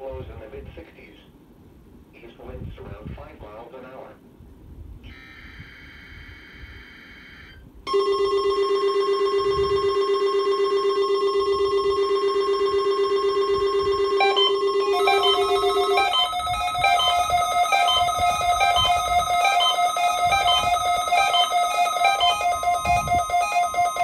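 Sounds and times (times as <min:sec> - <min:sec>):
buzzy electronic alarm tone: 0:05.1 - 0:08.9, 0:09.5 - 0:24.0
warbling data tones: 0:13.2 - 0:24.0
quick beeps stepping in pitch: 0:14.2 - 0:24.0.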